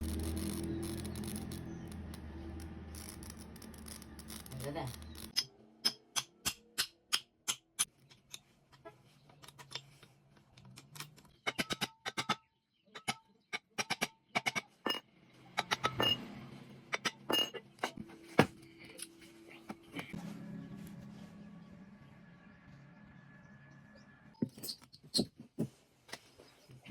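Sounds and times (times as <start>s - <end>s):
metallic taps and clinks: 15.6s - 16.2s.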